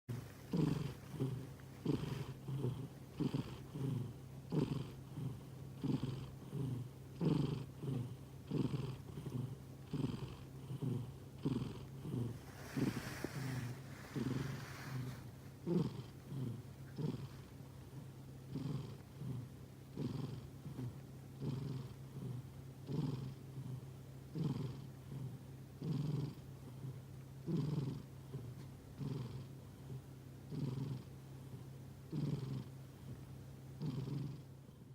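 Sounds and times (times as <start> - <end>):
cat breathing noisily: 12.1 - 16.0.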